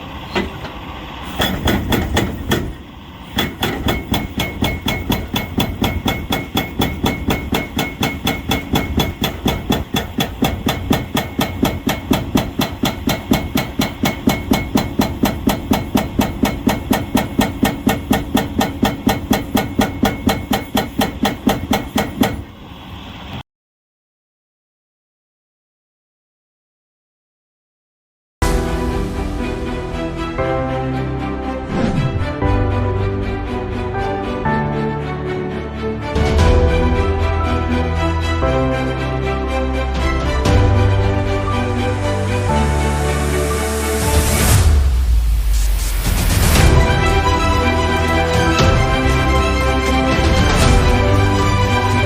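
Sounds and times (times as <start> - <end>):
hydraulic breaker hammering: 0.0 - 22.6.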